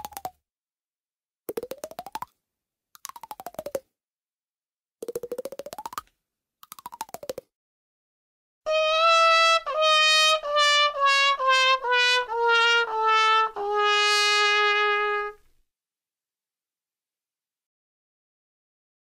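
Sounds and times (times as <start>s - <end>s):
trumpet descending wah-wah notes: 8.7s - 15.4s.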